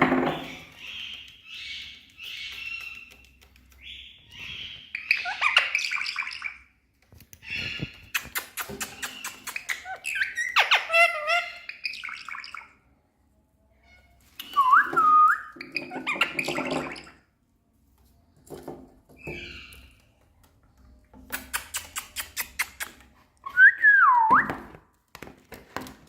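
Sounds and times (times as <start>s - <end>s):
parakeet chirping and squawking: 0.0s - 6.8s, 7.4s - 12.8s, 13.8s - 17.3s, 19.2s - 20.1s.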